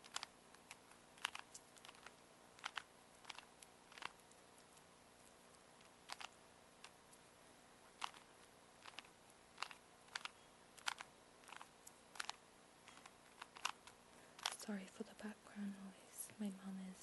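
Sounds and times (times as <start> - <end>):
plastic cube layers clicking: 0.0 - 4.8, 5.8 - 7.0, 8.0 - 14.6.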